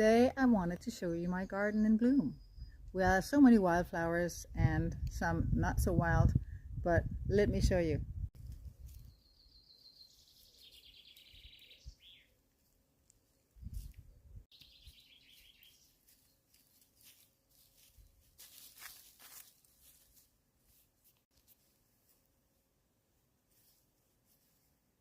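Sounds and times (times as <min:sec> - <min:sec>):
songbird trilling faintly: 0:08.9 - 0:12.4, 0:14.5 - 0:16.4.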